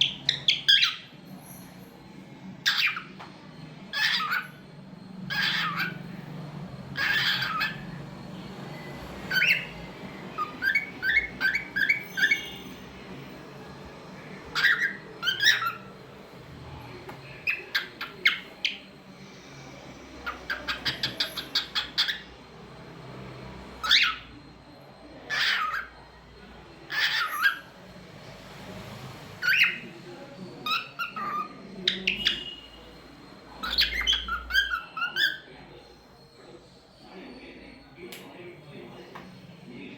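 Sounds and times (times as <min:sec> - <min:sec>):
cockatiel squawking: 0:00.0 - 0:01.1, 0:02.6 - 0:03.1, 0:03.9 - 0:04.6, 0:05.3 - 0:06.0, 0:06.9 - 0:08.0, 0:09.3 - 0:09.7, 0:10.3 - 0:12.7, 0:14.5 - 0:15.9, 0:17.4 - 0:18.8, 0:20.2 - 0:22.3, 0:23.8 - 0:24.3, 0:25.3 - 0:26.0, 0:26.8 - 0:27.7, 0:29.4 - 0:29.8, 0:30.6 - 0:32.6, 0:33.6 - 0:35.5.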